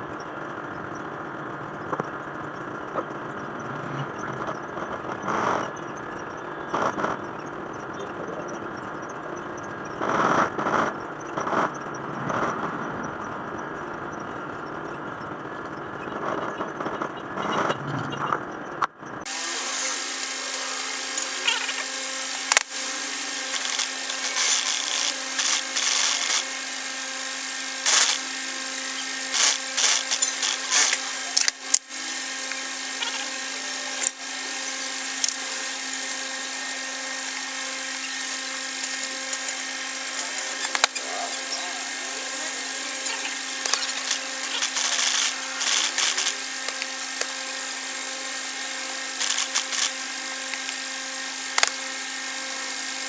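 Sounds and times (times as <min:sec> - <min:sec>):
sewing machine stitching: 0:19.3 - 0:41.6, 0:42.2 - 0:50.8.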